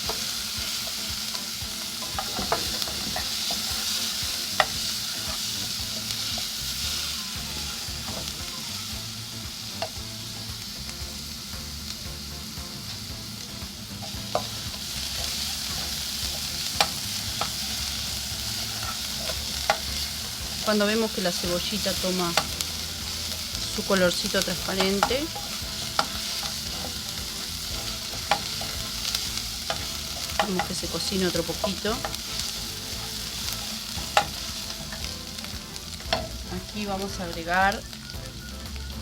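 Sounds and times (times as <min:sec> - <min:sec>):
utensil clicking on pot: 0:00.0 - 0:06.9, 0:13.4 - 0:36.6
onion sizzling in hot oil: 0:00.0 - 0:39.0.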